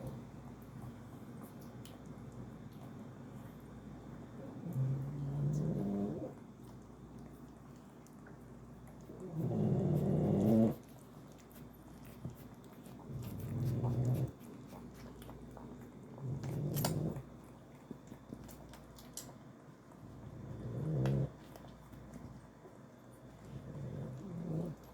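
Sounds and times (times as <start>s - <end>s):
loud low snoring: 4.7s - 6.3s, 9.3s - 10.8s, 20.3s - 21.3s, 23.6s - 24.8s.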